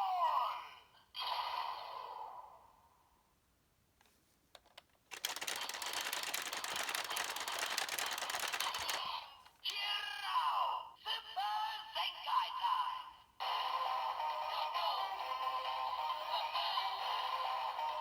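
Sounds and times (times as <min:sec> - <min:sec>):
plastic clicks: 0:04.5 - 0:09.7.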